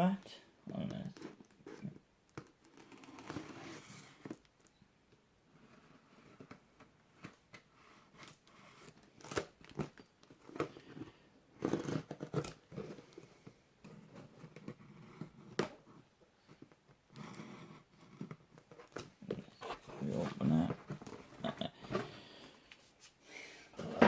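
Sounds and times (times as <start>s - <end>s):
knife cutting cardboard box: 11.6s - 13.1s, 19.2s - 22.2s
rustling: 17.4s - 24.0s.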